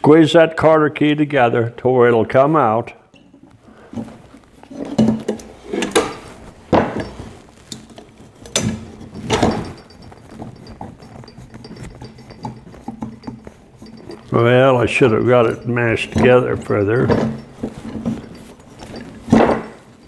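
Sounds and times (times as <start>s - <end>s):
pliers clicking and scraping metal: 4.2s - 20.0s.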